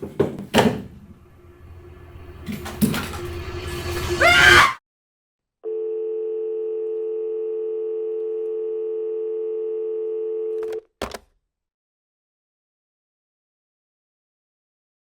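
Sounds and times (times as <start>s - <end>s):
loud rising pitch sound: 1.0s - 4.8s
telephone dial tone: 5.7s - 10.8s.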